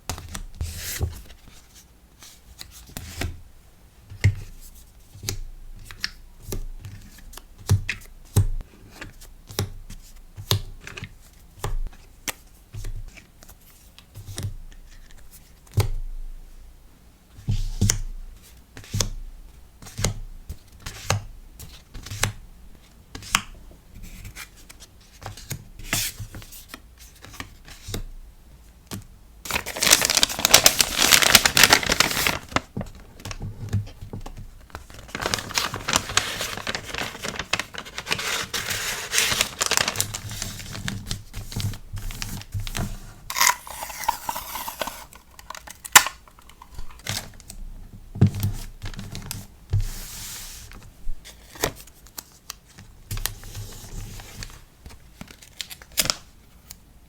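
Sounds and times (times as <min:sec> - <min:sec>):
packaging crinkling and tearing: 0:29.5 - 0:33.4, 0:34.7 - 0:42.5, 0:43.3 - 0:47.4, 0:55.2 - 0:56.2.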